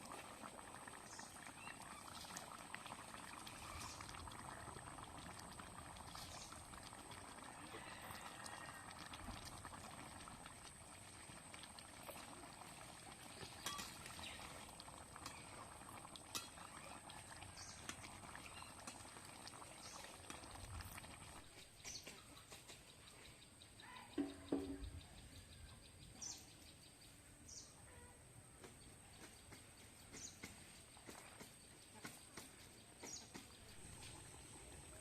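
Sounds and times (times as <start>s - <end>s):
gravy bubbling in a pot: 0.0s - 22.7s, 30.0s - 35.0s.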